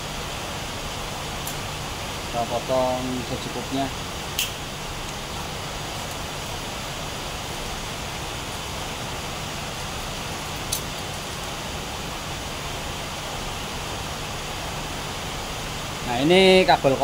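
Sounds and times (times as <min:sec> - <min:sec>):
sharp click: 0:04.4 - 0:04.6.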